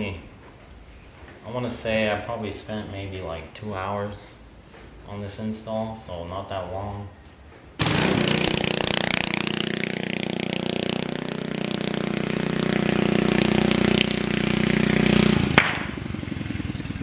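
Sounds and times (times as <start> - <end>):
small engine running: 7.8 - 17.0.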